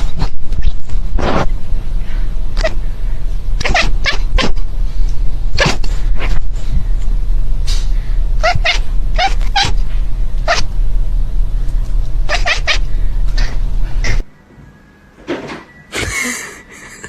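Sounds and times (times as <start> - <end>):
steady low hum: 0.0 - 17.0
cat meowing: 3.6 - 4.5, 8.4 - 9.8, 12.3 - 12.9.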